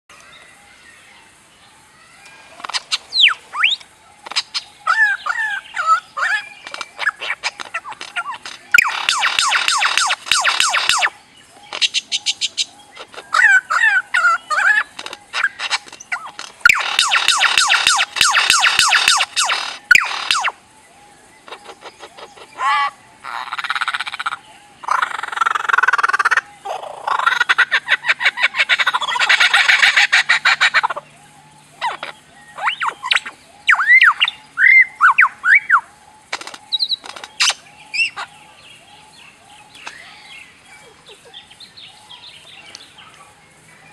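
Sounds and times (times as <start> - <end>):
warbling bird notes: 2.3 - 27.5
bird clicks: 3.7 - 4.7, 6.6 - 13.3, 14.9 - 20.5, 36.3 - 37.6, 39.7 - 40.1
bird whistles: 8.7 - 11.1, 16.6 - 20.6, 32.5 - 35.8.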